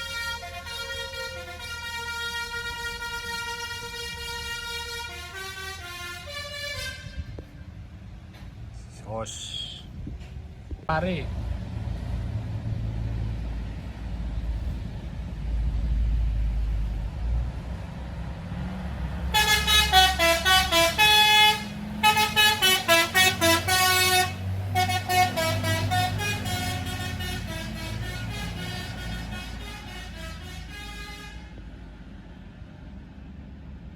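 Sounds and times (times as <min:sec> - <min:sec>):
bus horn playing a tune: 0:00.0 - 0:07.6, 0:19.3 - 0:31.8
bus engine rumble: 0:00.0 - 0:33.9.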